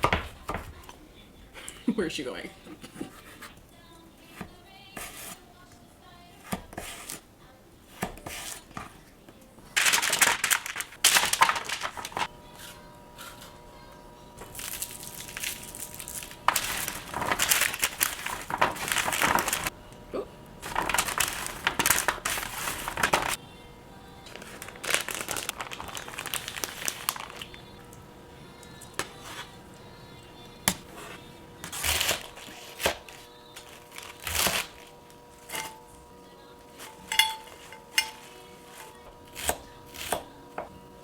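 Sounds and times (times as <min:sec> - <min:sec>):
faint music: 0:00.0 - 0:41.0
dishes and utensils clinking: 0:36.8 - 0:39.0.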